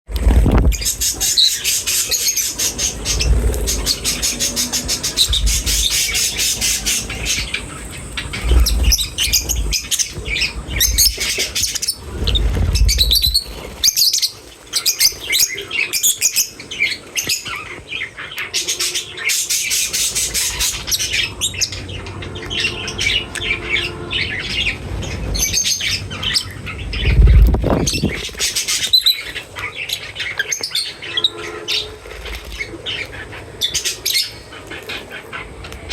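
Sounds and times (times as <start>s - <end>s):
small birds chirping: 0.2s - 35.9s
low thumps: 3.0s - 11.4s, 27.0s - 28.3s.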